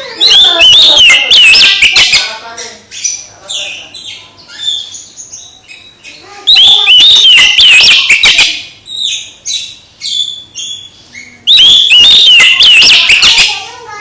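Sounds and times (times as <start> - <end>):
songbird singing whistled phrases: 4.5 - 13.6.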